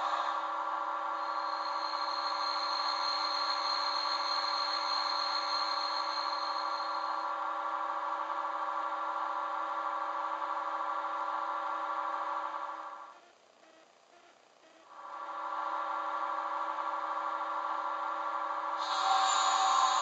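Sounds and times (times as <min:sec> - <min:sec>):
electric locomotive running sound: 0:00.0 - 0:07.3, 0:18.4 - 0:20.0
high whine: 0:00.0 - 0:13.1, 0:14.8 - 0:20.0.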